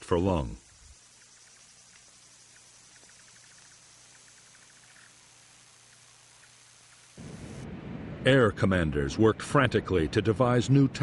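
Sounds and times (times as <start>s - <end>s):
faint ticks: 0.0s - 7.2s
faint hiss: 0.0s - 9.3s.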